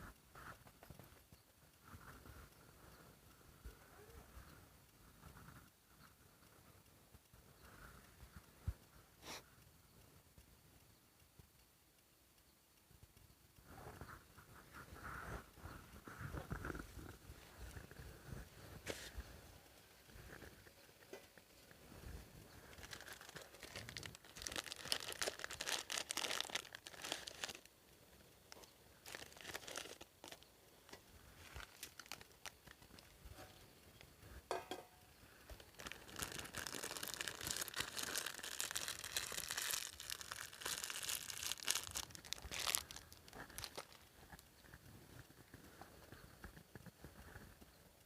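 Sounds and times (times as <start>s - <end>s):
material crinkling and rustling: 19.8s - 27.7s, 28.3s - 33.7s, 35.5s - 46.6s.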